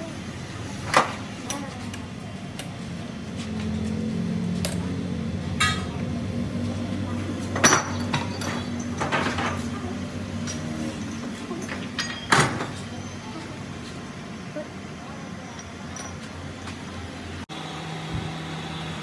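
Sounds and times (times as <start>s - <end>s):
steady low hum: 0.0s - 17.5s
metal tools clinking: 5.6s - 13.5s, 15.4s - 16.8s.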